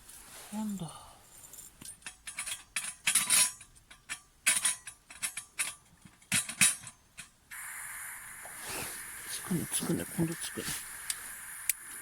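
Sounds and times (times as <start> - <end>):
metallic clicks and clatter: 1.4 - 7.4
pressure burner hissing: 7.5 - 12.0.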